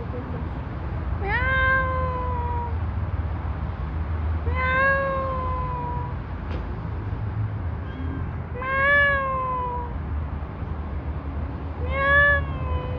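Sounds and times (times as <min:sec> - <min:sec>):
cat meowing: 0:01.2 - 0:02.9, 0:04.5 - 0:06.2, 0:08.5 - 0:10.0, 0:11.8 - 0:12.9.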